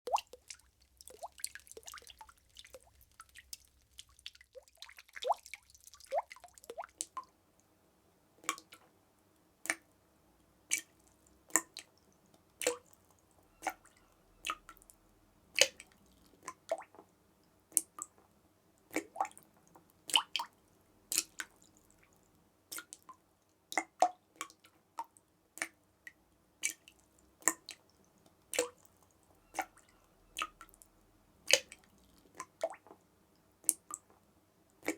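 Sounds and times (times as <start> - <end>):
water drops dripping: 0.1 - 7.4, 8.4 - 8.8, 10.7 - 15.0, 21.1 - 25.8, 26.6 - 30.9, 31.5 - 33.0.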